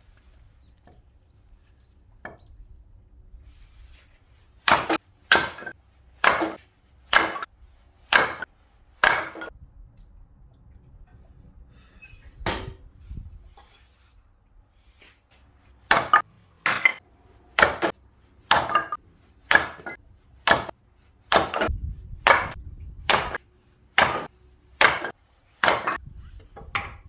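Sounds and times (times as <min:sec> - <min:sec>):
axe chopping firewood: 0:04.6 - 0:09.6, 0:15.8 - 0:27.0.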